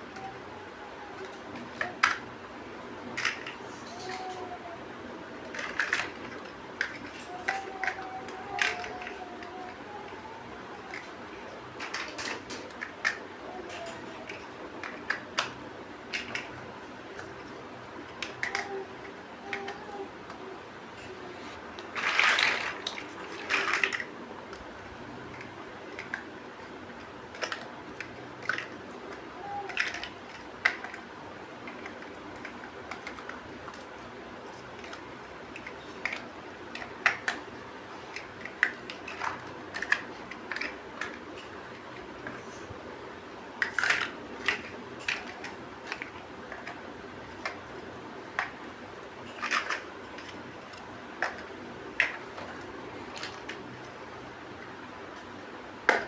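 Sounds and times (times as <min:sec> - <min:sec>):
plastic bricks clicking together: 0:05.4 - 0:09.7, 0:11.8 - 0:16.6, 0:18.2 - 0:20.0, 0:21.8 - 0:24.1, 0:25.3 - 0:26.3, 0:27.3 - 0:31.0, 0:34.5 - 0:37.5, 0:38.1 - 0:42.4, 0:43.6 - 0:47.6, 0:49.4 - 0:53.6.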